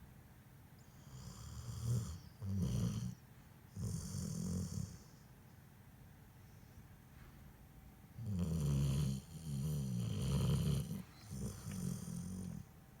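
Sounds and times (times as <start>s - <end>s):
dog snoring: 0.9s - 3.2s, 3.8s - 5.2s, 8.2s - 12.7s.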